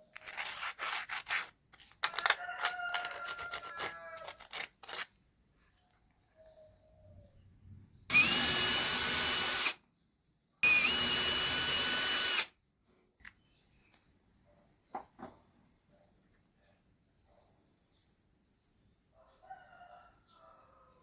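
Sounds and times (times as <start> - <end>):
electric drill whining: 8.1 - 9.8, 10.6 - 12.5.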